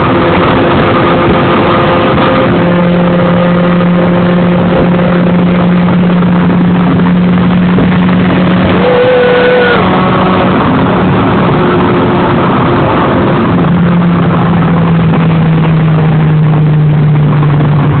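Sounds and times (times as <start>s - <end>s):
engine running loudly: 0.0s - 18.0s
short higher tone: 8.4s - 12.2s.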